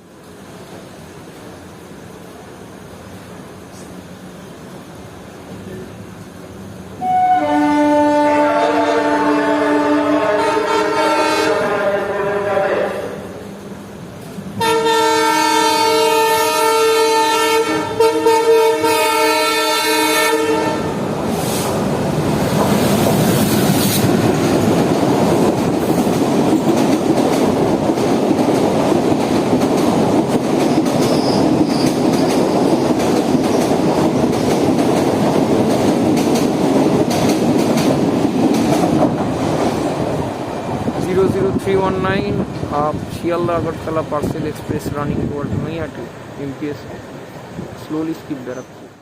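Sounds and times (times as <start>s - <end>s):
train horn blast: 7.0s - 12.9s, 14.6s - 21.0s
train wheels clattering over rail joints: 22.3s - 39.8s.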